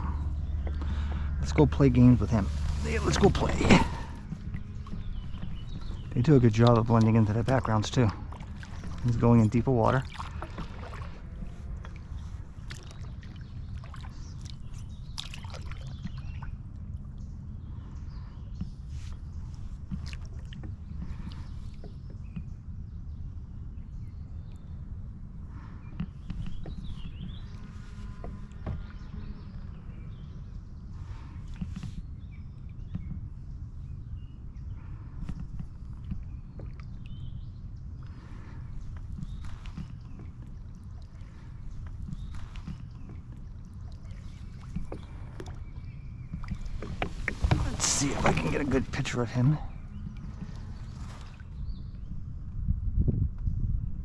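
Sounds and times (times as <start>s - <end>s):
water lapping and dripping: 0.0s - 22.6s, 34.6s - 51.7s
steady low rumble: 0.0s - 54.0s
small splashes: 2.2s - 16.5s, 38.1s - 51.5s.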